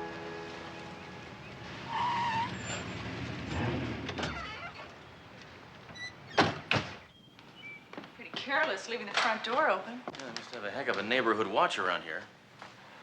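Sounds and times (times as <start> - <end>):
tyres screeching: 1.4 - 5.1.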